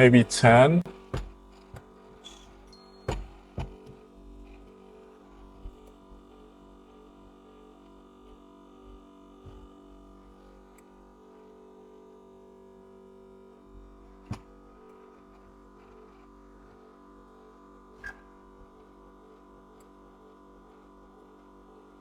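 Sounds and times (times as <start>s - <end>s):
vacuum pump humming: 0.0s - 10.9s.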